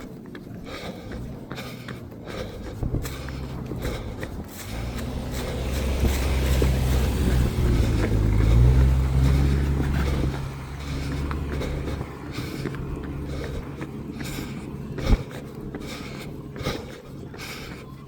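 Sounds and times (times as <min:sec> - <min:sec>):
vehicle engine rumble passing: 0:00.0 - 0:18.0.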